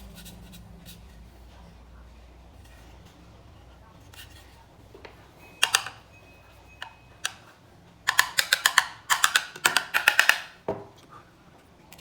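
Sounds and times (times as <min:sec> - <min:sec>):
hard objects clicking and tapping: 0:05.0 - 0:06.0, 0:08.1 - 0:11.0.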